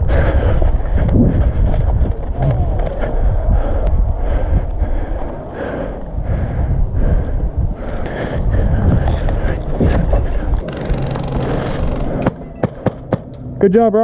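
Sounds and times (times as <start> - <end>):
microphone rumbling and rustling: 0.0 - 5.4, 6.3 - 13.2
sharp knocks: 12.1 - 13.3.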